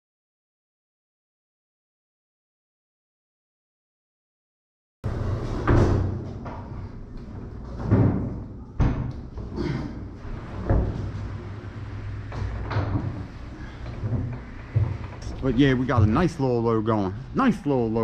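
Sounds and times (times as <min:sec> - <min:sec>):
steady low hum: 0:05.1 - 0:18.0.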